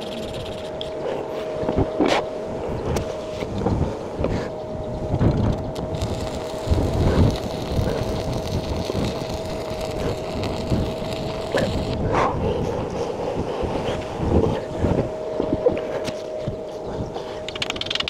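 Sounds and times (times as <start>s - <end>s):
wind buffeting microphone: 0.0s - 18.0s
welding arc crackling: 5.1s - 12.1s.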